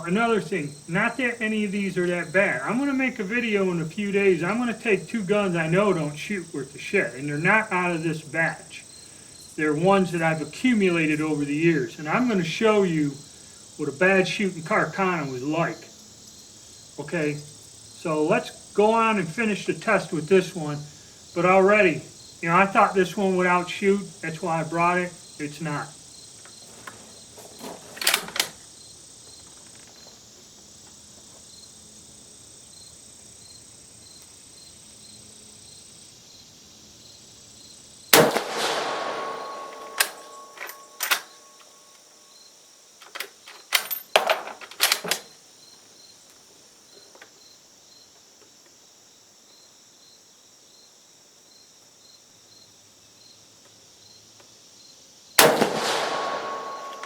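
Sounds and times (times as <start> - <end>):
crickets chirping: 0.0 - 57.0
rifle bolt clicking: 38.2 - 41.4
rifle shots with echo: 38.2 - 41.6, 55.4 - 57.0.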